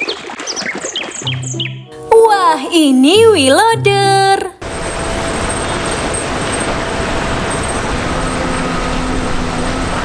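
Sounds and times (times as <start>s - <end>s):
water spraying: 4.6s - 10.0s.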